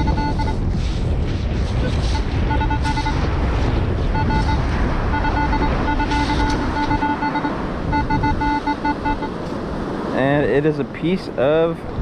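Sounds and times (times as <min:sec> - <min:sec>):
metal detector beeps: 0:00.0 - 0:00.6, 0:02.1 - 0:03.2, 0:04.2 - 0:09.4
surf washing: 0:00.0 - 0:12.0
wind buffeting microphone: 0:00.0 - 0:12.0.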